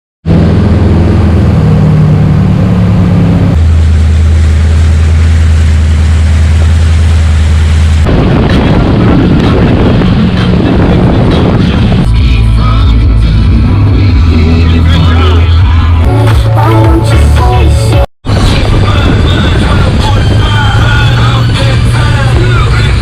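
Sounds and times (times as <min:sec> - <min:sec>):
harsh rough engine sound: 0:00.2 - 0:23.0
boat engine idling: 0:00.3 - 0:17.9.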